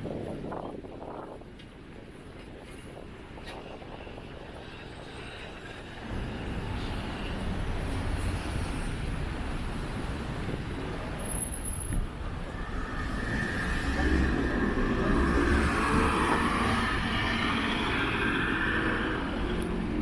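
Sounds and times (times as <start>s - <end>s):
street traffic noise: 0.0s - 20.0s
motor vehicle passing close: 12.5s - 19.8s.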